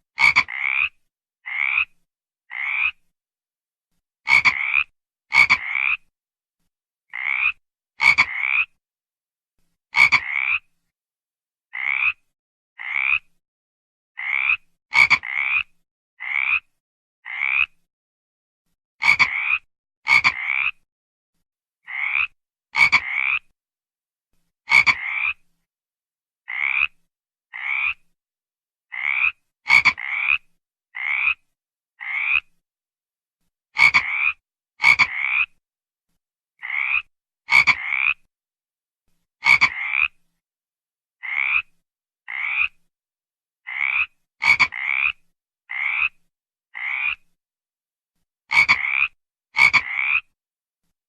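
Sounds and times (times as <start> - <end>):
frog croaking: 0.2 - 3.0, 4.3 - 6.1, 7.1 - 8.8, 10.0 - 10.7, 11.7 - 12.2, 12.8 - 13.3, 14.2 - 17.8, 19.0 - 20.8, 21.8 - 23.5, 24.7 - 25.4, 26.5 - 28.0, 28.9 - 31.4, 32.0 - 32.5, 33.8 - 35.6, 36.6 - 38.3, 39.4 - 40.2, 41.2 - 41.7, 42.3 - 42.8, 43.6 - 47.2, 48.5 - 50.4.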